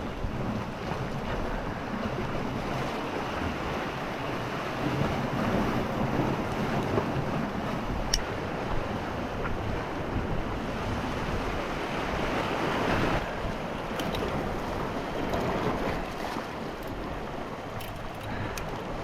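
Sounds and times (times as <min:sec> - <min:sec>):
sea water washing: 0:00.0 - 0:19.0
wind buffeting microphone: 0:00.0 - 0:19.0
faint clicks: 0:17.8 - 0:18.9.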